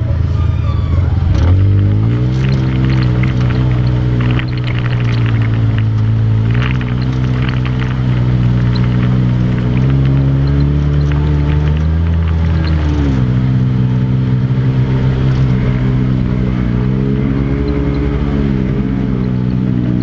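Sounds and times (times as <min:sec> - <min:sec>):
atv engine running: 0:00.0 - 0:20.0
ticks and crackles: 0:01.8 - 0:13.4.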